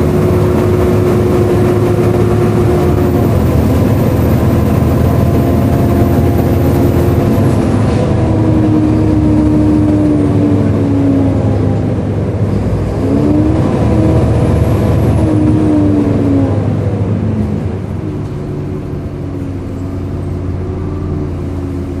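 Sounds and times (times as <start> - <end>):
bus engine running: 0.0 - 22.0.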